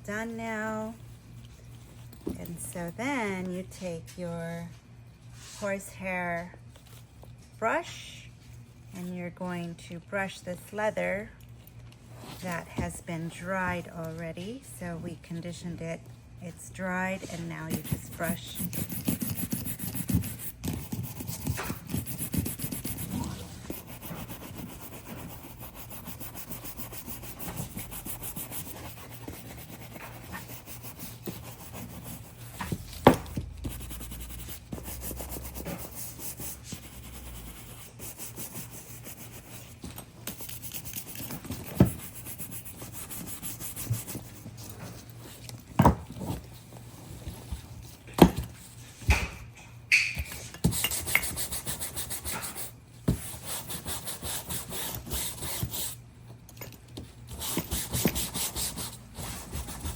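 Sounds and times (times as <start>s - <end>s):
brush scrubbing leather: 18.2s - 32.4s.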